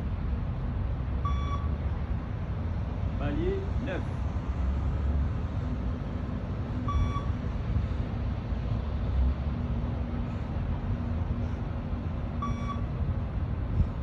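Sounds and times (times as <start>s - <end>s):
steady low rumble: 0.0s - 14.0s
short electronic beep: 1.2s - 1.7s, 6.9s - 7.3s, 12.4s - 12.8s.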